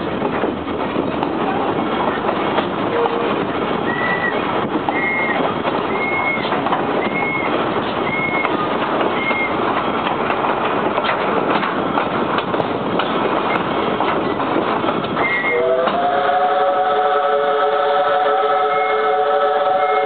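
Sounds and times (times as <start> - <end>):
train rushing clatter: 0.0 - 20.0
train whistle chord: 15.4 - 20.0.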